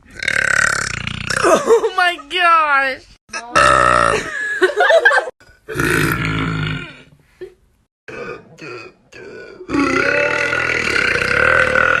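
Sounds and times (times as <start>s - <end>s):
loud low burps: 0.1s - 1.6s, 3.3s - 4.3s, 5.6s - 7.1s, 8.1s - 12.0s.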